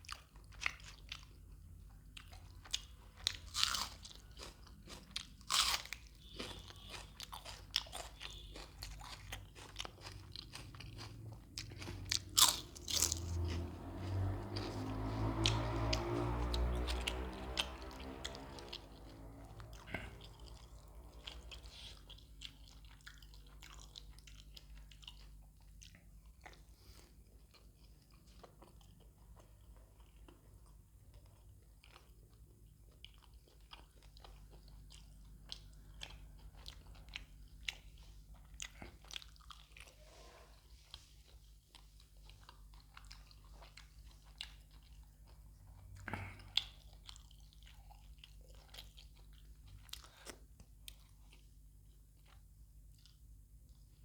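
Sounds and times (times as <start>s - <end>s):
faint low hum: 0.0s - 54.0s
person chewing food: 0.0s - 54.0s
loud bite: 10.5s - 21.9s.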